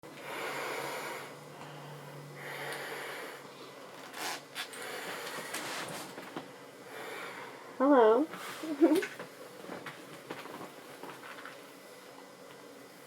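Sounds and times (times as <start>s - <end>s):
hissing breaths through gas mask: 0.2s - 3.7s, 4.6s - 6.2s.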